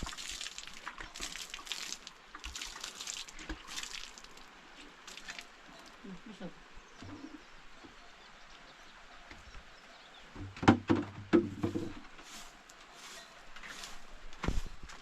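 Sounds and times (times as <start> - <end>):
sharp knocks and clatter: 10.4 - 12.1.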